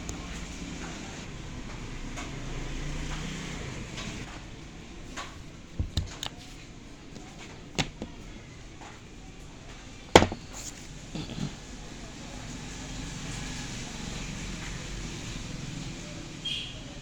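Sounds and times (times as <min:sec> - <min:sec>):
sharp knocks and clicks: 0:05.8 - 0:06.3, 0:10.2 - 0:10.5.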